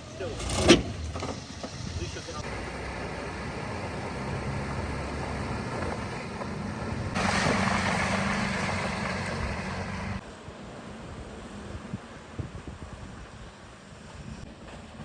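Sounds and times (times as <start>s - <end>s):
off-road vehicle engine running: 0.0s - 10.2s.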